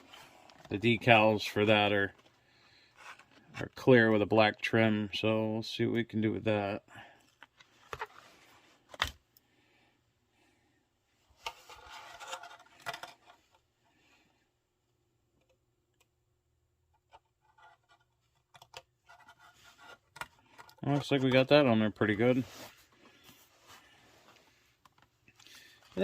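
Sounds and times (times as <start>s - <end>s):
rustling and scraping: 7.3s - 9.1s, 11.3s - 13.6s, 17.0s - 26.0s.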